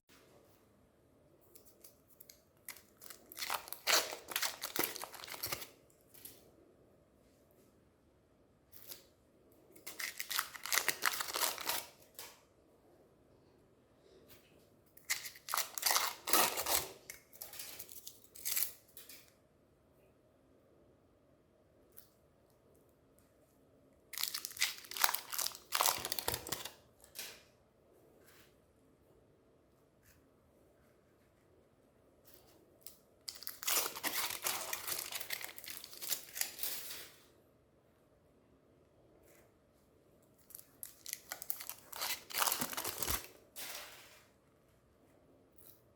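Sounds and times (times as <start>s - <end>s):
wrapper crinkling and tearing: 2.6s - 5.8s, 9.8s - 12.2s, 15.0s - 18.8s, 24.1s - 26.8s, 33.3s - 37.0s, 40.5s - 43.4s.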